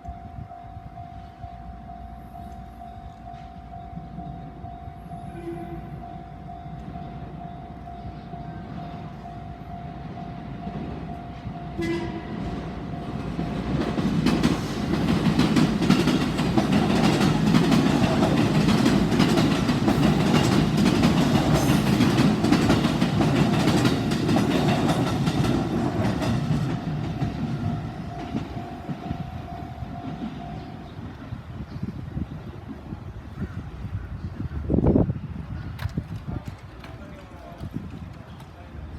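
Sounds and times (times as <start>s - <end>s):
crossing warning bell ringing: 0.0s - 31.2s
train rumbling past: 0.0s - 38.9s
train horn: 4.3s - 9.7s, 11.1s - 13.1s
wheels clattering over rail joints: 11.9s - 29.1s, 35.7s - 38.6s.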